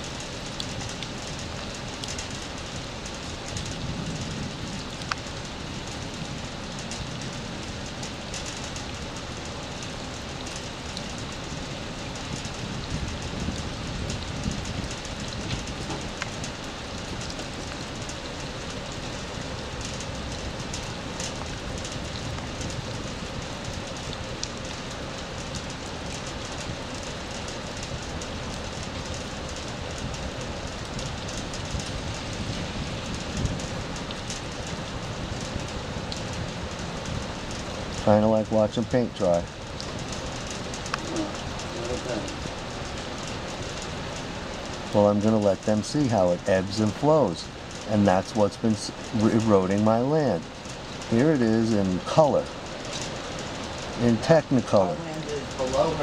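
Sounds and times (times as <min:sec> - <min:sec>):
faint dripping ticks: 0:00.0 - 0:56.0
hiss of storm water and rain: 0:00.0 - 0:56.0.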